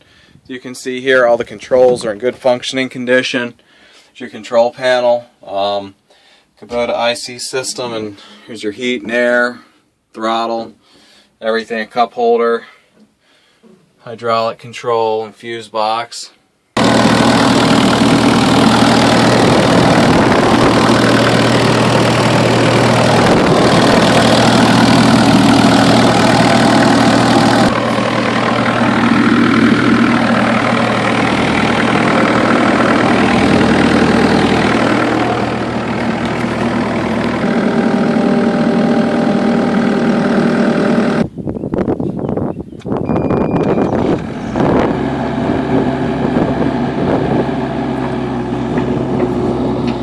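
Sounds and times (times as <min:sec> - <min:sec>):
excavator diesel engine running: 0:16.8 - 0:41.2, 0:43.1 - 0:50.0.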